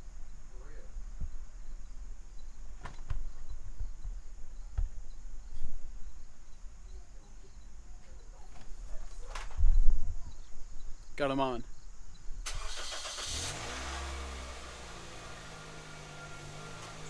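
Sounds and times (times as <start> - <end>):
insect chirring: 0.0 - 12.5.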